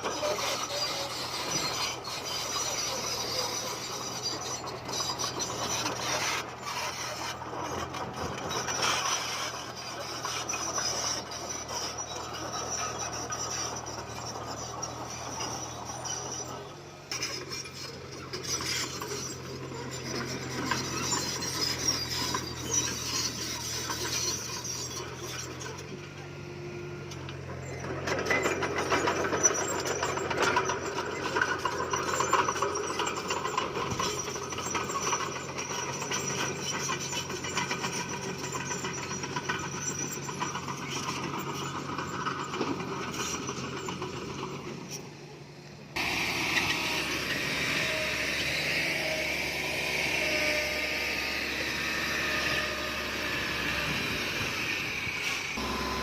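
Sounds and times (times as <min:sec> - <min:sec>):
track and stone clanks: 0:00.0 - 0:26.3, 0:27.1 - 0:45.2
bulldozer diesel engine: 0:00.0 - 0:56.0
high whine: 0:55.6 - 0:56.0.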